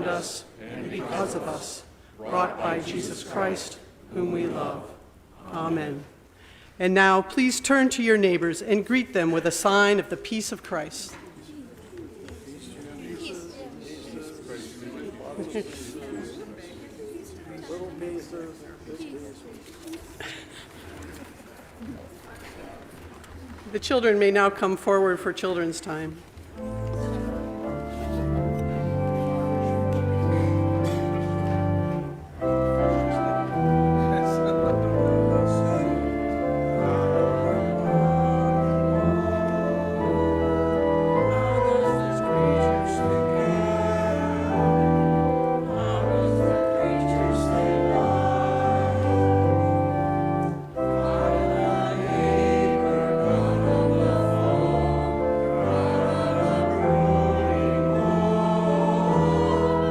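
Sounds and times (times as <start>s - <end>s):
church organ playing a hymn: 0.0s - 0.4s, 26.5s - 59.9s
voices singing: 0.0s - 6.2s, 32.7s - 59.9s.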